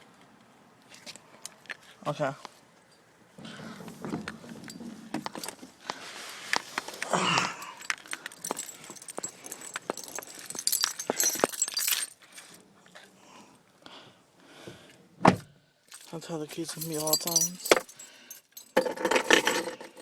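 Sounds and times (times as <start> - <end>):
car keys jangling: 7.5 - 12.5, 15.9 - 20.0.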